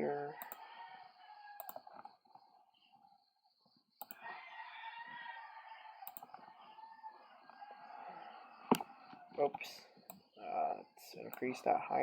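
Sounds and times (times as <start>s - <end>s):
computer mouse clicks: 0.4s - 0.6s, 1.6s - 2.1s, 4.0s - 4.3s, 6.0s - 6.4s, 8.7s - 8.9s.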